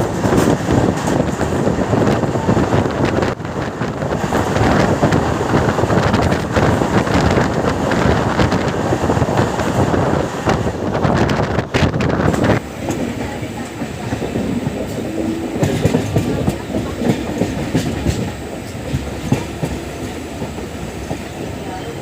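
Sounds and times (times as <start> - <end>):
moving train rush: 0.0 - 22.0
wind buffeting microphone: 0.0 - 22.0.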